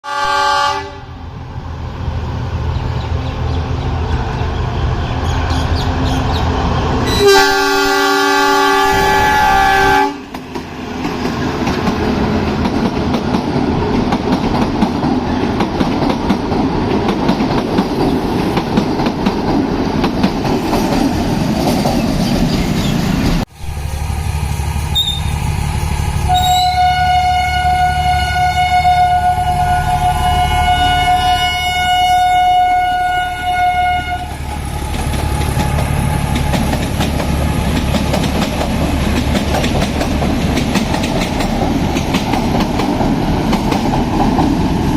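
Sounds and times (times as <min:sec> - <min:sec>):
train horn: 0:00.0 - 0:01.3, 0:06.9 - 0:10.3, 0:26.3 - 0:36.4
train rumble and wheel noise: 0:00.1 - 0:44.9.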